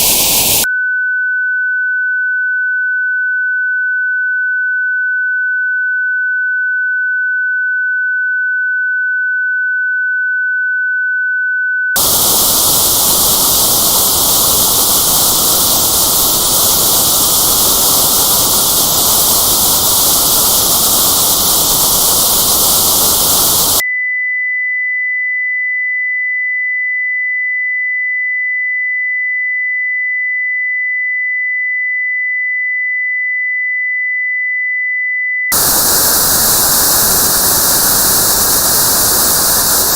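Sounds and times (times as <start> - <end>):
loud white noise: 0.0 - 0.7, 12.0 - 23.8, 35.5 - 39.9
pure test tone: 0.0 - 0.7, 12.0 - 23.8.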